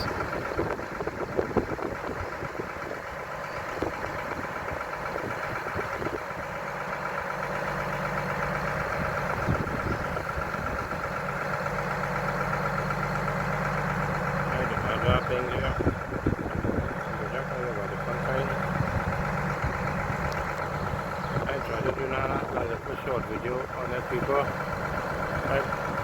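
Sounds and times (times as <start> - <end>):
drilling rig engine idling: 0.0 - 26.0
deep hum: 14.1 - 26.0.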